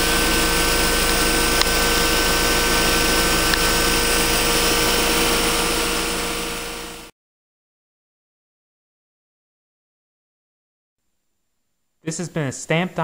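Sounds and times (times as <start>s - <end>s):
heat pump fan and compressor hum: 0.0s - 7.1s.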